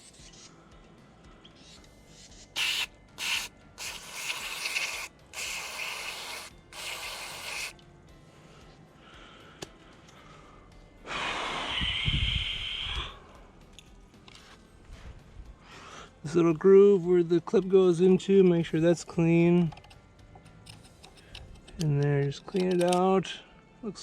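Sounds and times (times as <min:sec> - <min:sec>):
hissing scrubbing noise: 0:02.6 - 0:07.7
steady high whistle: 0:11.8 - 0:13.2.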